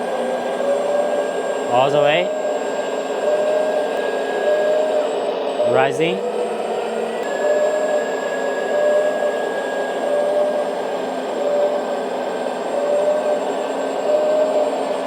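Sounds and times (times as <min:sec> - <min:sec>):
electric hydraulic pump whirring: 0:00.0 - 0:15.0
short higher whine: 0:01.5 - 0:11.9.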